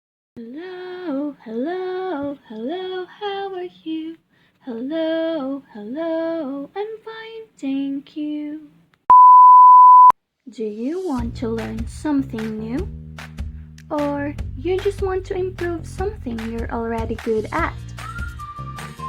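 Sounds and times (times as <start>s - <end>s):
woman singing: 0.4s - 8.7s, 10.5s - 12.9s, 13.9s - 17.8s.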